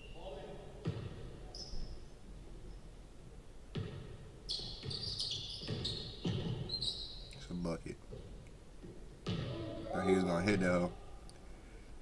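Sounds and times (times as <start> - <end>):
basketball bouncing on hardwood: 0.8 - 1.2, 3.7 - 6.8, 8.1 - 9.6.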